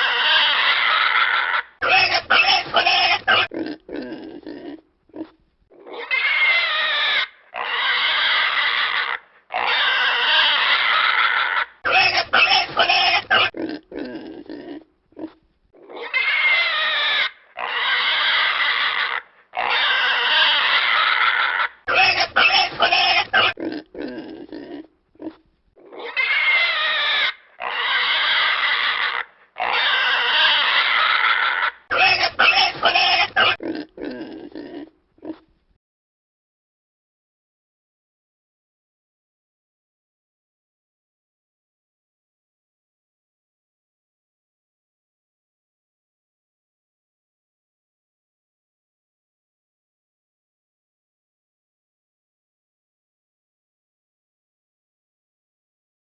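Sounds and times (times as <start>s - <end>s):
pig squealing: 0.0s - 35.4s
pig grunts and oinks: 0.0s - 35.6s.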